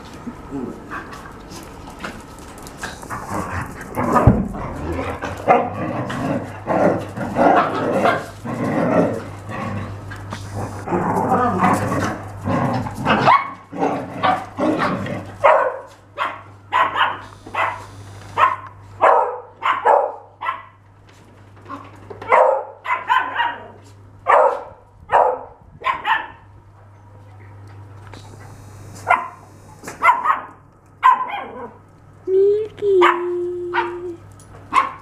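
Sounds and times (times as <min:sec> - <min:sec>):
dog barking: 0:13.2 - 0:13.6, 0:15.4 - 0:20.8, 0:22.2 - 0:26.4, 0:29.0 - 0:29.4, 0:30.0 - 0:31.8, 0:33.0 - 0:34.1, 0:34.7 - 0:35.0.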